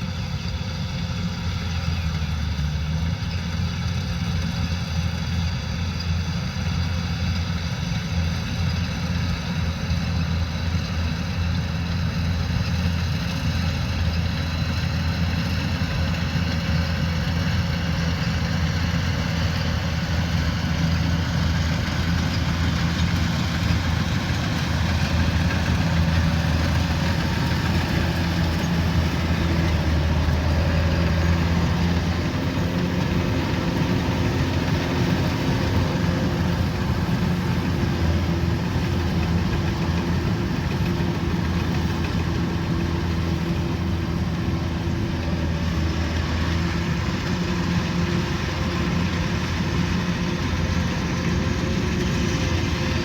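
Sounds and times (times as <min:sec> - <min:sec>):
combine harvester diesel engine: 0:00.0 - 0:53.0.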